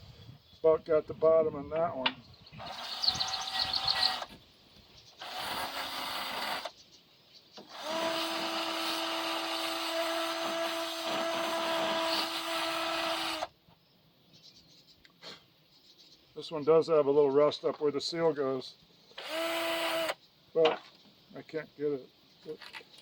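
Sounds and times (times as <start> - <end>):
electric drill with wire brush: 2.6 - 4.4, 5.2 - 6.7, 7.6 - 13.5, 19.2 - 20.2.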